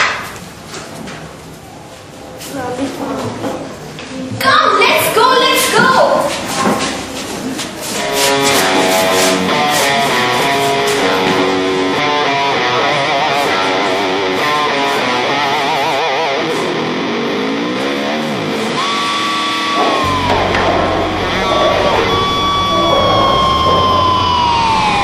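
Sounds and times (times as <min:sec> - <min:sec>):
guitar-led background music: 0:08.0 - 0:25.0.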